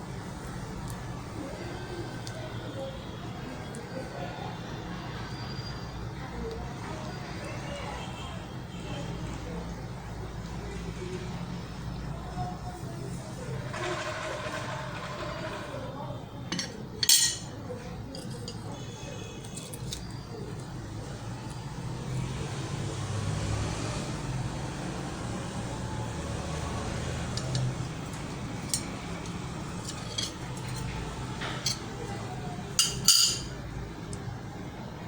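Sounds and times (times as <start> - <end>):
glass and utensils clinking: 16.5 - 17.5, 29.8 - 31.9, 32.7 - 33.6.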